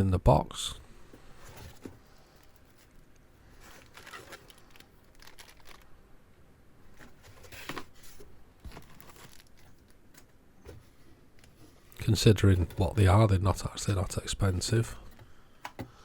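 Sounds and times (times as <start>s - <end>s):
packaging rustling: 1.5s - 5.9s, 6.9s - 10.3s.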